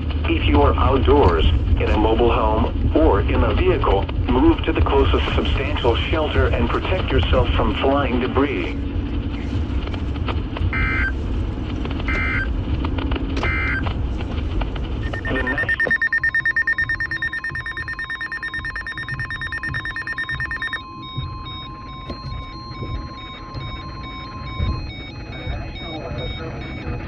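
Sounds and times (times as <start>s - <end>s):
warbling data bursts: 15.1s - 20.8s
rapidly pulsing high beep: 15.1s - 27.0s
steady warning alarm tone: 15.1s - 27.0s.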